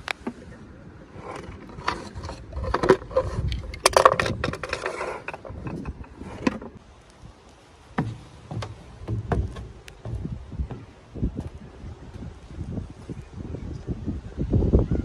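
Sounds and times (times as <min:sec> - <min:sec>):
toy packaging clicks and scraping: 0:01.2 - 0:06.7.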